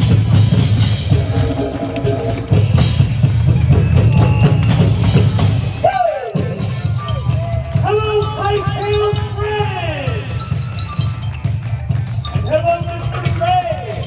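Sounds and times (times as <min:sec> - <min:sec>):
melodic music: 0:00.0 - 0:05.8
percussion troupe drumming: 0:00.0 - 0:14.0.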